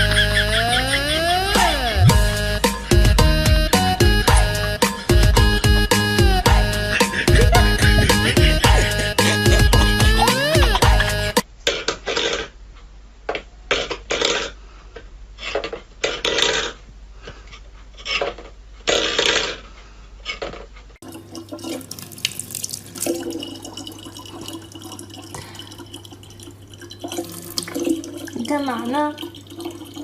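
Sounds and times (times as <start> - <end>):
steady low hum: 0.0 - 11.4
faint running water: 21.0 - 30.0
water splashing: 21.0 - 30.0.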